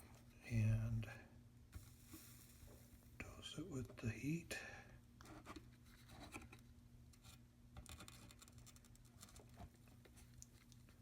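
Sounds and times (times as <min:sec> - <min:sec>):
steady low hum: 0:00.0 - 0:07.8
faint ticks and scratches: 0:05.2 - 0:11.0.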